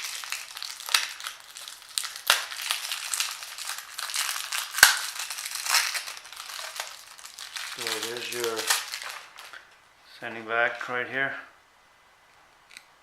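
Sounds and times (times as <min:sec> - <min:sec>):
sandpaper rustling and crinkling: 0:00.0 - 0:09.6.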